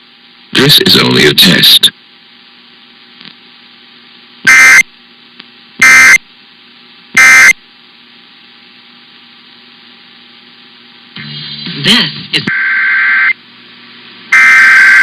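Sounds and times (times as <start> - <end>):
faint steady hum: 0.0 - 15.0
digital buzzing data tones: 4.5 - 4.8, 7.2 - 7.6, 12.5 - 13.4, 14.3 - 15.0.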